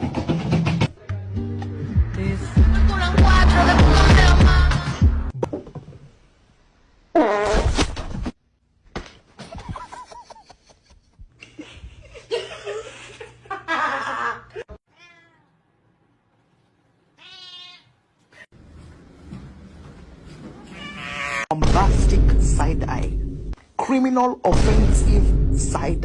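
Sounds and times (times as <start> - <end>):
cat meowing: 14.9 - 15.6, 17.2 - 18.5, 20.7 - 21.5.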